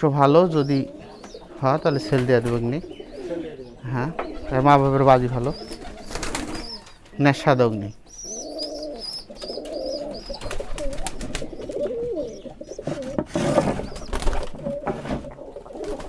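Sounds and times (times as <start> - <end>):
pigeons cooing: 0.0 - 16.0.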